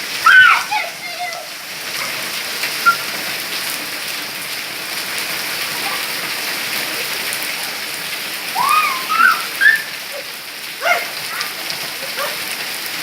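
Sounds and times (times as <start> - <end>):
steady rain falling: 0.0 - 13.0
short high sliding cries: 8.6 - 10.0.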